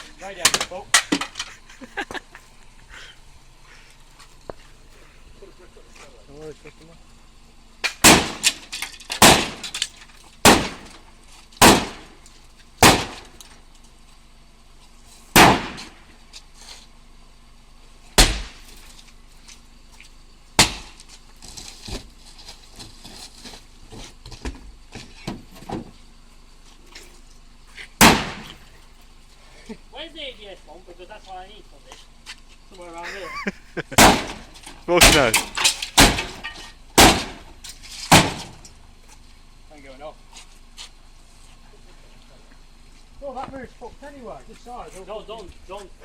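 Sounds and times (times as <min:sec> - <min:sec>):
sledgehammer smashing car body: 0:07.8 - 0:12.2, 0:12.8 - 0:13.4, 0:15.3 - 0:16.0, 0:18.2 - 0:18.8, 0:20.6 - 0:21.0, 0:28.0 - 0:28.6, 0:33.9 - 0:38.6.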